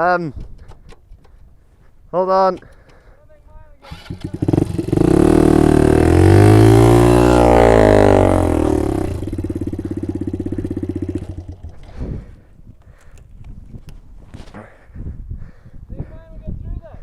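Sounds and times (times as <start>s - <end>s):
small motorbike engine revving: 3.8s - 12.1s.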